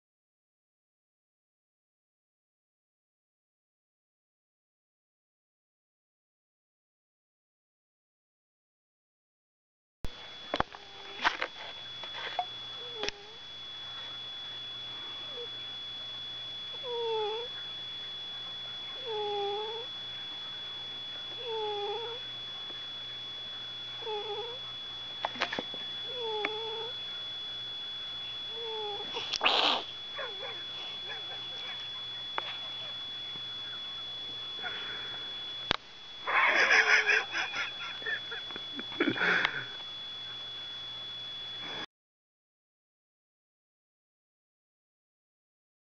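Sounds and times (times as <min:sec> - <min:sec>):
cat yowling: 0:16.8 - 0:17.5, 0:19.0 - 0:19.9, 0:21.4 - 0:22.2, 0:24.0 - 0:24.6, 0:26.1 - 0:27.0, 0:28.5 - 0:33.0
cat hissing and growling: 0:28.7 - 0:30.6.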